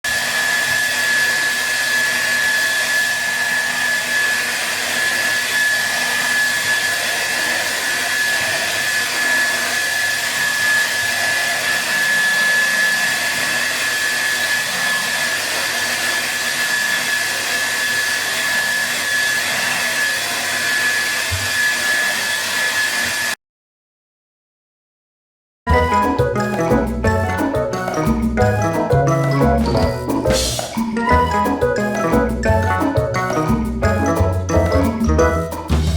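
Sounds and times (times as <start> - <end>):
hair dryer running: 0.1 - 23.4.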